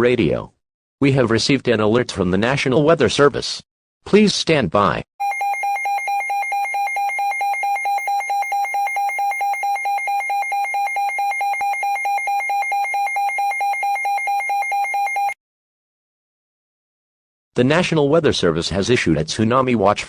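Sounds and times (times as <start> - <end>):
rapid electronic alarm beeps: 5.2 - 15.4.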